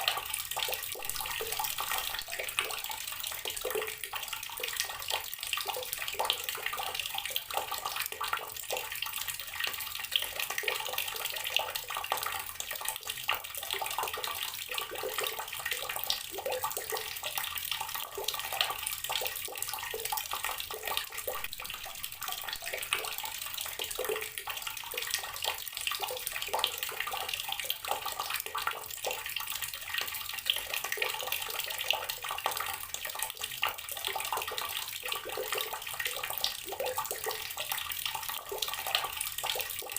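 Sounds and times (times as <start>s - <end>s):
water splashing from a tap: 0.0s - 39.9s.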